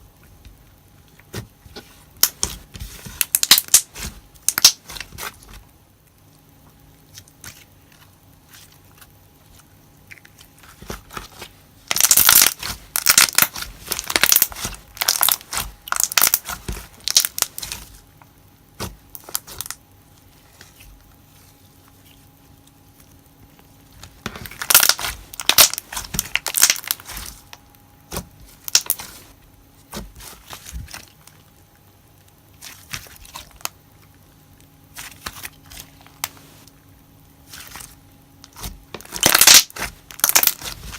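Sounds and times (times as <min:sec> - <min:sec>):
slime squishing and popping: 0:01.1 - 0:05.6, 0:10.0 - 0:17.9, 0:18.8 - 0:19.8, 0:24.1 - 0:29.2, 0:37.4 - 0:40.9.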